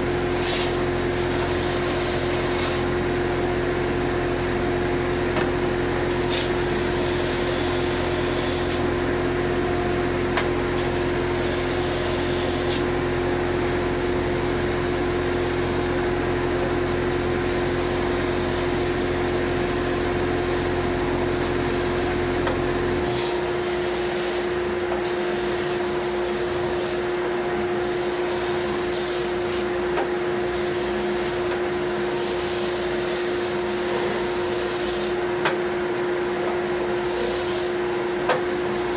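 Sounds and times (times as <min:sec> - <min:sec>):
wood scraping on sandpaper: 0:00.3 - 0:00.8.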